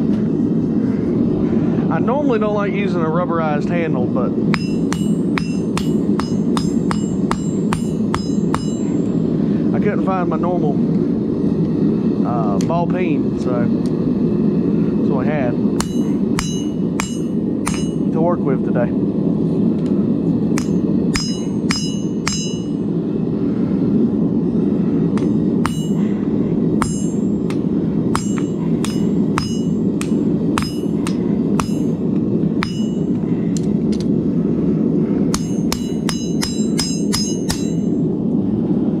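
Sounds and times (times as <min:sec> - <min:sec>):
steady rushing noise: 0:00.0 - 0:39.0
hammer striking steel on anvil: 0:04.5 - 0:09.2, 0:15.8 - 0:18.1, 0:20.6 - 0:22.9, 0:25.2 - 0:26.2, 0:26.8 - 0:32.0, 0:32.6 - 0:33.2, 0:35.3 - 0:38.0.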